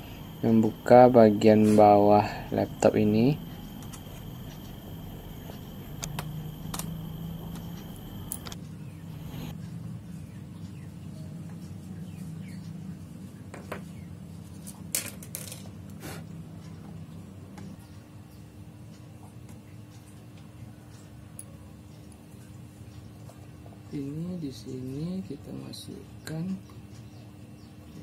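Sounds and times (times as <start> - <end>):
steady low hum: 0.0 - 14.5.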